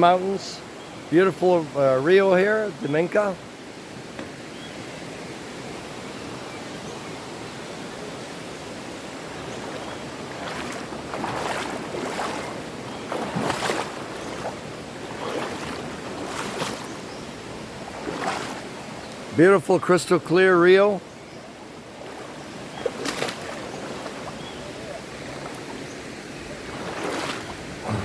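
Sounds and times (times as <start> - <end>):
river rushing over rocks: 7.2 - 19.3
water splashing: 8.6 - 28.0.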